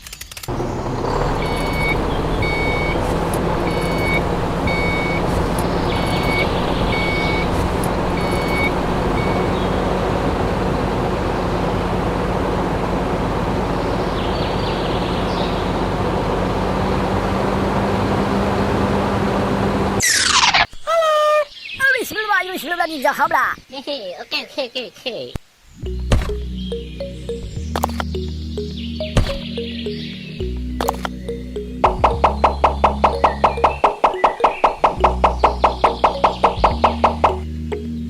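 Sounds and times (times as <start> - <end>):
construction vehicle motor running: 0.4 - 20.0, 25.9 - 38.0
reversing alarm beeps: 1.4 - 3.0, 3.6 - 5.3, 5.9 - 7.5, 8.1 - 9.5.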